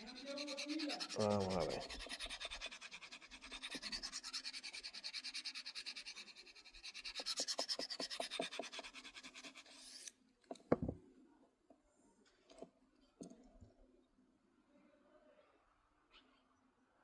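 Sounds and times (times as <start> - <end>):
knife rasping on sharpener: 0.0 - 10.1
knock: 10.6 - 11.0.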